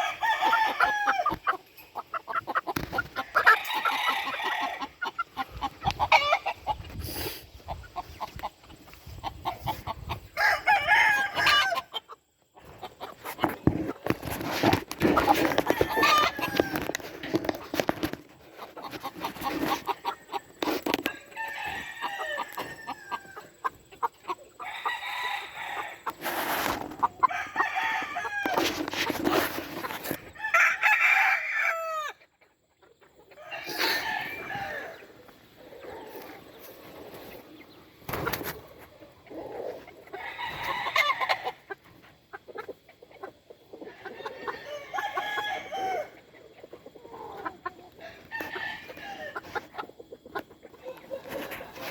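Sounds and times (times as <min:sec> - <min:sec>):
roosters crowing: 0:00.0 - 0:07.3, 0:09.5 - 0:12.0, 0:15.0 - 0:17.6, 0:19.4 - 0:23.6, 0:24.5 - 0:29.5, 0:30.1 - 0:32.2, 0:33.3 - 0:37.4, 0:39.3 - 0:41.9, 0:43.8 - 0:46.3, 0:47.0 - 0:49.8
chickens clucking: 0:00.0 - 0:30.6, 0:31.2 - 0:51.9.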